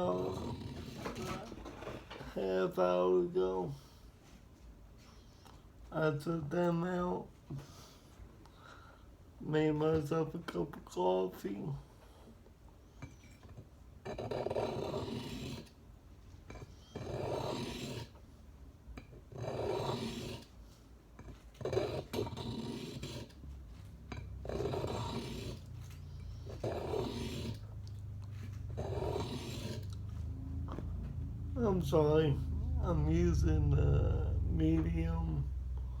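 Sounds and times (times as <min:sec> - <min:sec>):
knife blade scraping sharpening stone: 0:19.4 - 0:20.4, 0:21.6 - 0:23.2.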